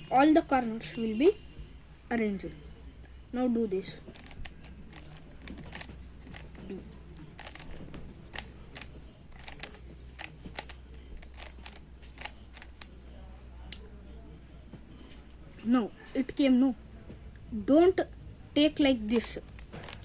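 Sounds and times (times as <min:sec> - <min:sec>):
plastic puzzle cube clicking: 0:04.0 - 0:13.0, 0:19.5 - 0:20.0.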